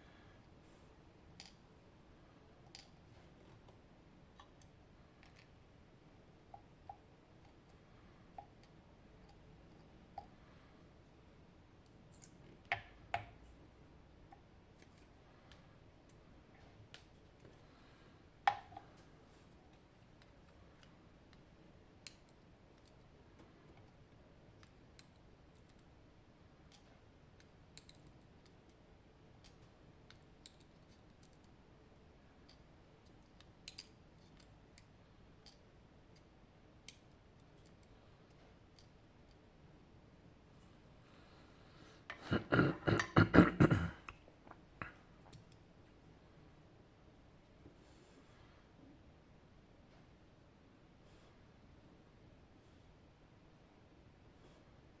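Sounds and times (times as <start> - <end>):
small clicks of lock parts: 26.7 - 28.8, 29.4 - 31.6, 32.4 - 39.4.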